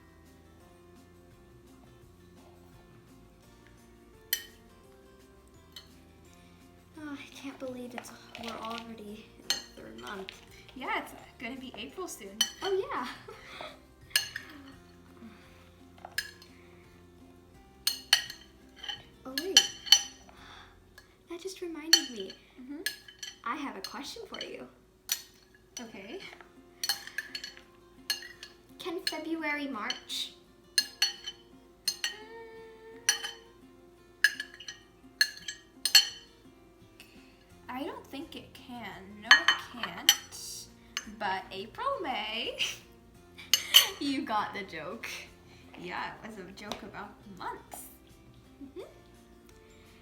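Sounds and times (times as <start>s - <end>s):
faint background music: 0.0s - 50.0s
cutlery clinking against bowl: 4.3s - 4.7s, 5.6s - 6.0s, 7.9s - 12.8s, 14.0s - 15.1s, 15.9s - 16.6s, 17.8s - 20.4s, 21.9s - 29.3s, 29.9s - 32.3s, 33.1s - 33.6s, 34.2s - 36.4s, 39.3s - 40.4s, 43.4s - 44.0s.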